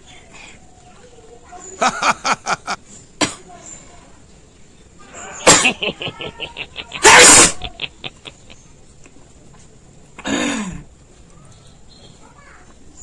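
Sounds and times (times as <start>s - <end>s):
person sneezing: 5.4s - 5.8s, 7.0s - 7.8s.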